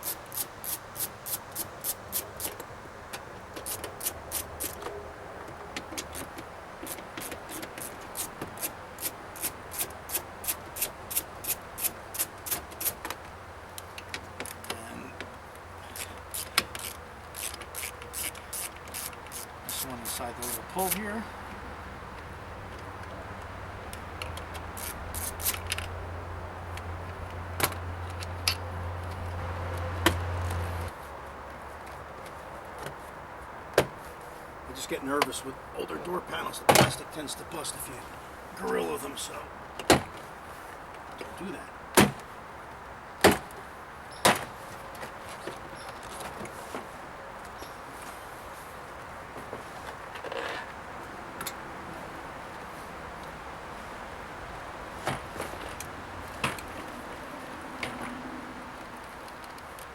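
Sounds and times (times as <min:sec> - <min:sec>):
ratchet wrench clicking: 0:00.0 - 0:02.6, 0:03.6 - 0:04.8, 0:06.9 - 0:13.0, 0:15.9 - 0:21.0, 0:24.3 - 0:25.9.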